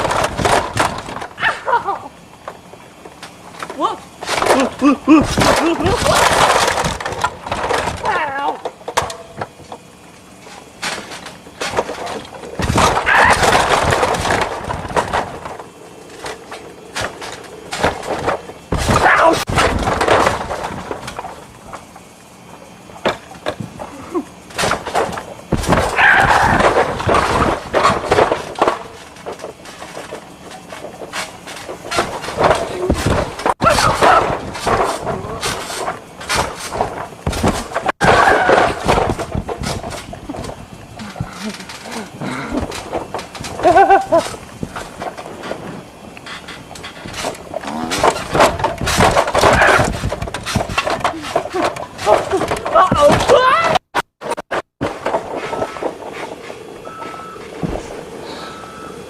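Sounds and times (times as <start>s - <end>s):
toys clattering and rattling: 0.0s - 58.2s
person growling: 47.6s - 48.1s.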